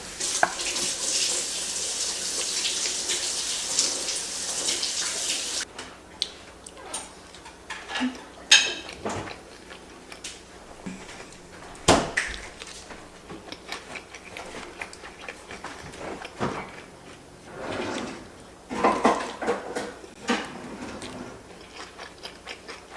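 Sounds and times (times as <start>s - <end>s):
dishes and cutlery clinking: 7.0s - 9.3s, 18.7s - 21.0s.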